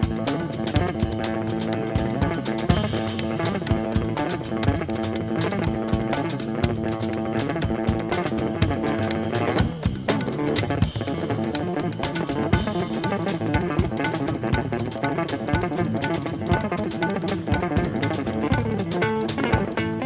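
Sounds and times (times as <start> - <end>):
bass guitar: 0.0 - 20.0
steady percussion beat: 0.0 - 20.0
plucked guitar: 18.5 - 20.0.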